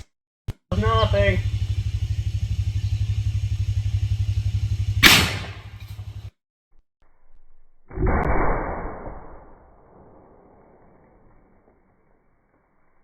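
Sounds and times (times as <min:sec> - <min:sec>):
engine idling: 0:00.7 - 0:06.4
muffled blast: 0:04.9 - 0:05.8, 0:07.9 - 0:11.8
shotgun shot: 0:05.0 - 0:06.0, 0:07.9 - 0:11.7.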